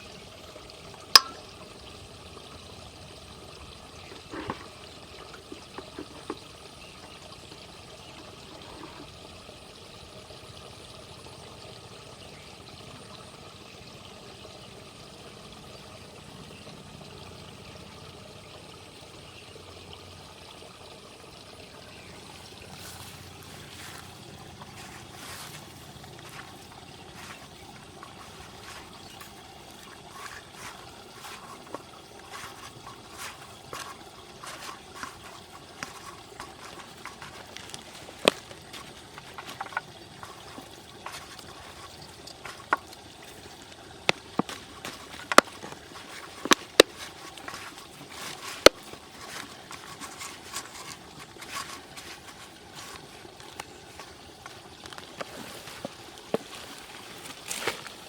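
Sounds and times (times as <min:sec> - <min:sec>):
water trickling and sloshing: 0:00.0 - 0:58.0.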